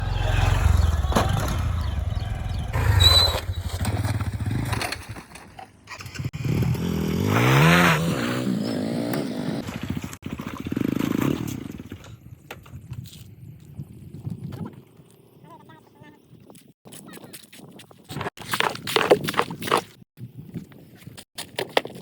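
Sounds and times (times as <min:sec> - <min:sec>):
vehicle engine running: 0:00.0 - 0:04.5
clatter: 0:00.6 - 0:07.0.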